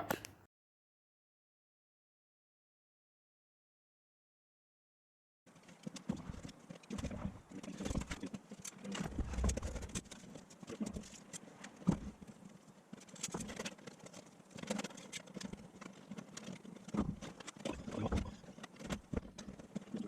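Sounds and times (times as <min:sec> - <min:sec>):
water against hull: 0:05.5 - 0:20.0.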